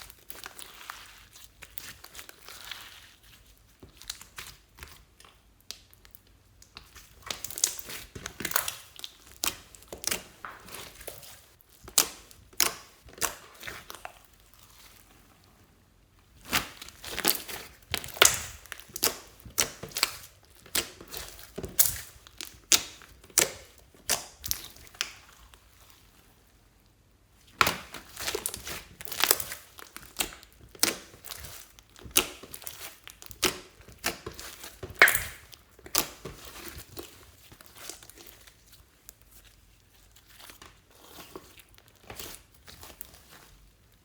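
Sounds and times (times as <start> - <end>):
hands squishing slime: 0.0 - 26.6, 27.4 - 44.0.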